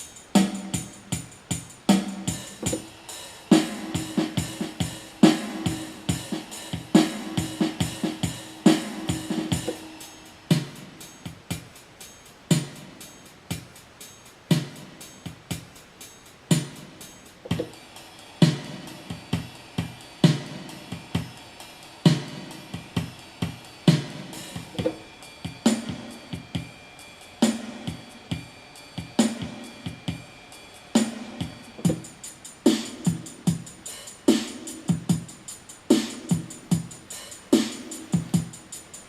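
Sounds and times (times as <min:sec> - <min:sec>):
keyboard ballad accompaniment: 0:31.0 - 0:39.0.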